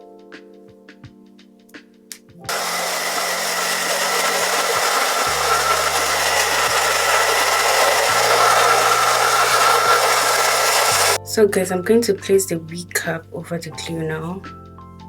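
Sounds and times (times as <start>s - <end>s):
blow dryer running: 2.5s - 11.2s.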